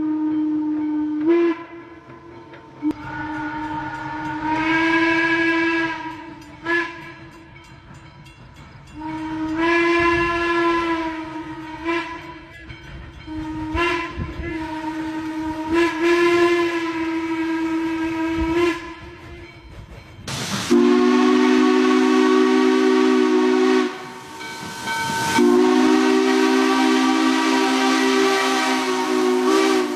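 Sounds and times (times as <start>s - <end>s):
steam locomotive whistle: 0.0s - 7.6s, 8.9s - 19.5s, 20.3s - 29.9s
moving train rumble: 0.0s - 29.9s
steam hissing: 11.4s - 29.9s
chime whistle blasts: 20.7s - 29.9s.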